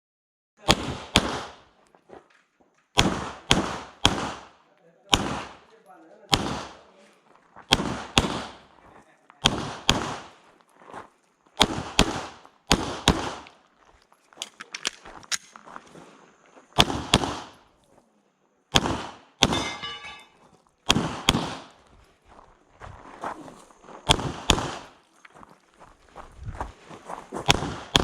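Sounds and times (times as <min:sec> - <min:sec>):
pistol shots: 0:00.6 - 0:01.7, 0:03.0 - 0:05.7, 0:06.3 - 0:06.9, 0:07.7 - 0:08.7, 0:09.4 - 0:10.4, 0:11.6 - 0:13.6, 0:16.8 - 0:17.6, 0:18.7 - 0:21.8, 0:24.1 - 0:25.0, 0:27.4 - 0:28.0
footsteps: 0:01.7 - 0:03.0, 0:10.2 - 0:18.2, 0:19.5 - 0:20.8, 0:21.6 - 0:28.0.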